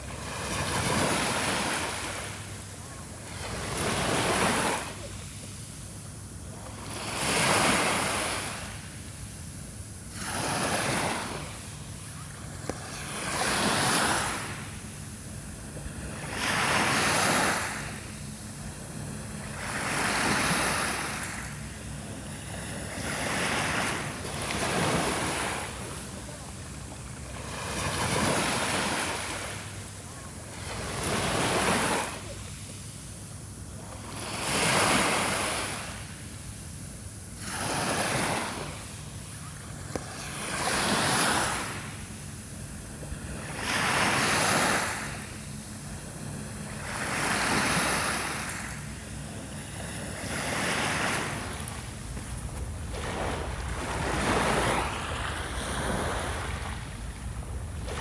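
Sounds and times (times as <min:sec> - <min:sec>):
sea waves breaking on shore: 0:00.0 - 0:36.6, 0:37.3 - 0:58.0
low wind rumble: 0:45.1 - 0:58.0.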